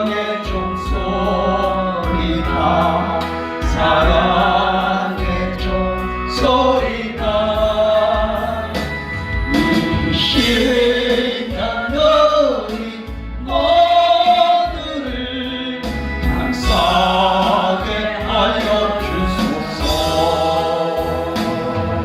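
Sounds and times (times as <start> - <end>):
choir singing a hymn: 0.0 - 22.0
instrumental accompaniment: 0.0 - 22.0.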